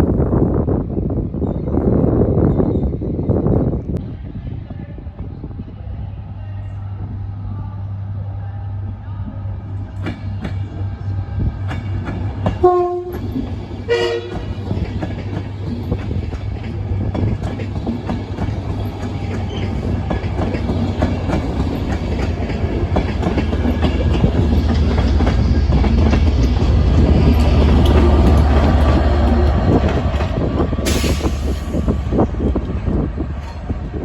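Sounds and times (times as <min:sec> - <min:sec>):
train rumbling: 0:00.0 - 0:34.0
train horn notes: 0:12.6 - 0:13.2, 0:13.9 - 0:14.6.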